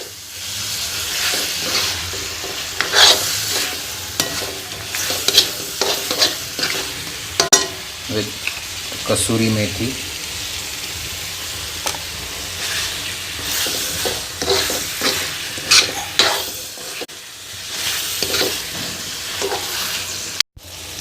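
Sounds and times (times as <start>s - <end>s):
food sizzling in a pan: 0.0s - 21.0s
spoon scraping a pan: 0.8s - 7.8s, 11.8s - 17.1s, 17.7s - 20.2s.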